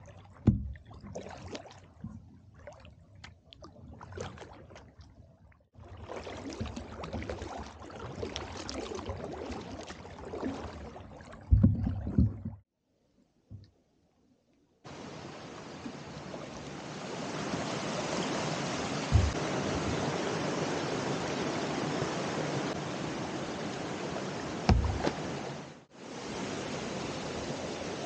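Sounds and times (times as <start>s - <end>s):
paddle splashing in water: 0.0s - 12.6s, 14.9s - 28.0s
water dripping and gurgling: 0.0s - 12.6s, 19.0s - 20.0s
heavy low thumps: 19.1s - 19.4s.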